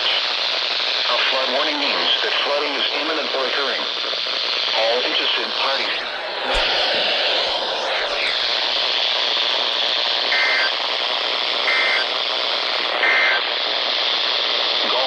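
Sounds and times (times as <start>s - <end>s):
radio static hiss: 0.0s - 15.0s
electronic data bursts: 10.3s - 10.7s, 11.7s - 12.0s.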